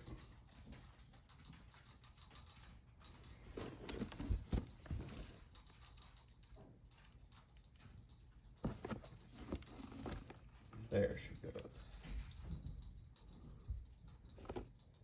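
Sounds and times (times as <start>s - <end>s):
faint rustling: 3.0s - 5.6s, 8.6s - 15.0s.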